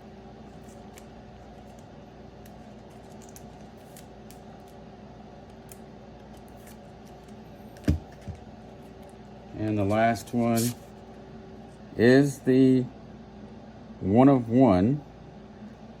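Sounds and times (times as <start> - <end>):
steady room hum: 0.0 - 16.0
trading cards clicking and rustling: 0.5 - 4.8, 5.5 - 9.1.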